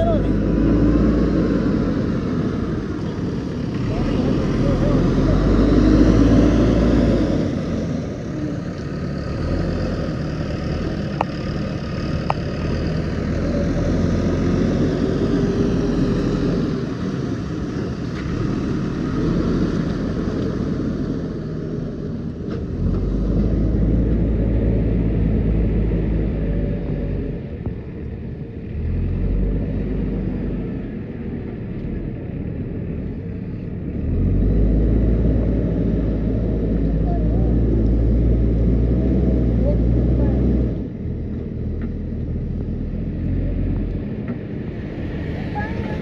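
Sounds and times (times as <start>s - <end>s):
diesel engine running: 0.0s - 46.0s.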